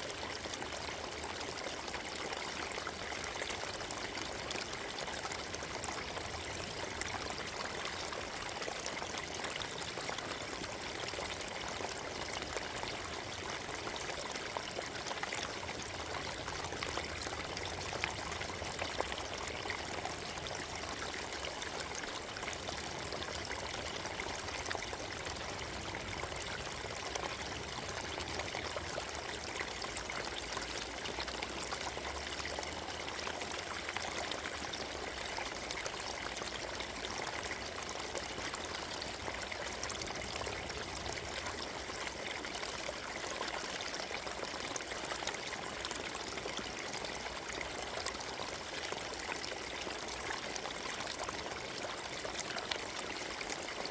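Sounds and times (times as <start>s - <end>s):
stream flowing over stones: 0.0s - 53.9s.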